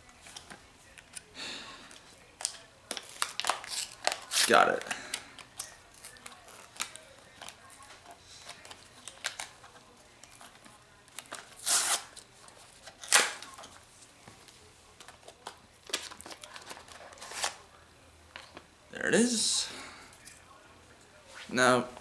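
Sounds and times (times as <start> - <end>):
packaging crinkling: 1.9 - 12.2.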